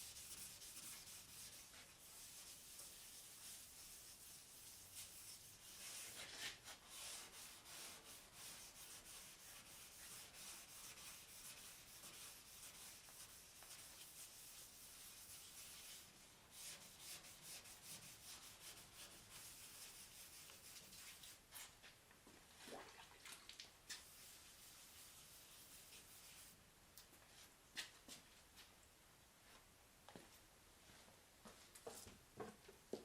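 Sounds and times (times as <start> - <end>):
sandpaper rubbing on metal: 0.0 - 21.3.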